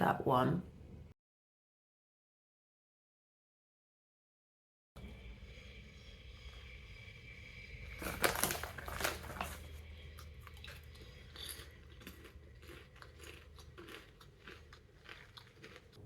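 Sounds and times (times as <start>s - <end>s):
popcorn crunching chewing: 7.8s - 16.0s.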